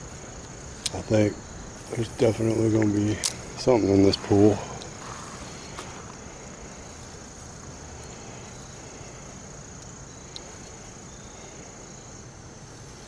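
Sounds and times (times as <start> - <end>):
rushing hiss: 0.0 - 9.6
high-pitched insect drone: 0.0 - 13.0.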